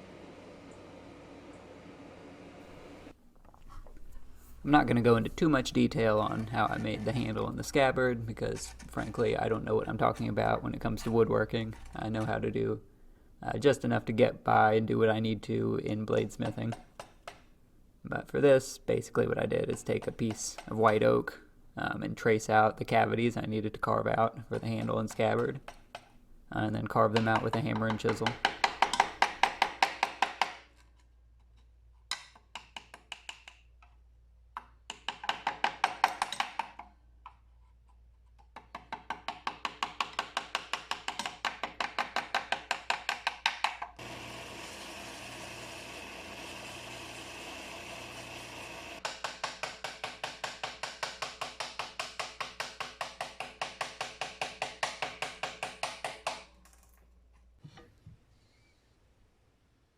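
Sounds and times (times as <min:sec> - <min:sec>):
hammer tapping chisel into wood: 0:27.1 - 0:30.7, 0:32.1 - 0:33.9, 0:34.6 - 0:36.9, 0:38.5 - 0:43.9, 0:49.0 - 0:56.5.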